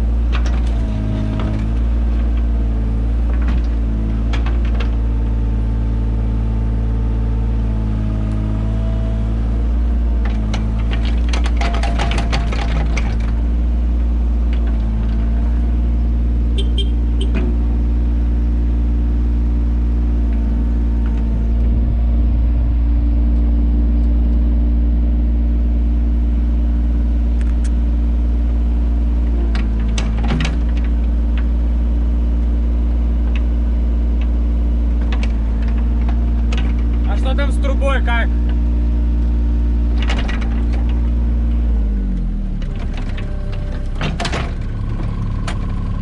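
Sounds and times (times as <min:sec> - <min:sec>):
excavator diesel engine running: 0:00.0 - 0:46.0
sharp knocks and clicks: 0:10.2 - 0:13.4, 0:29.5 - 0:31.5.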